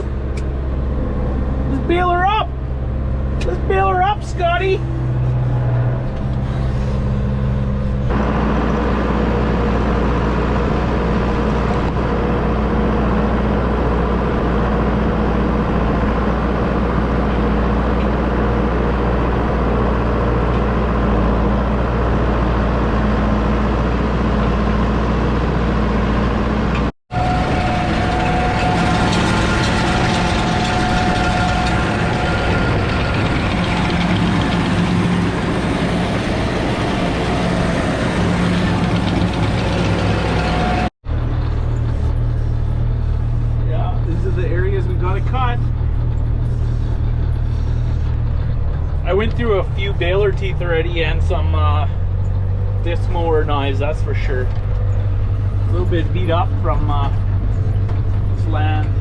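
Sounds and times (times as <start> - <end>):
tractor engine under load: 0.0 - 59.0.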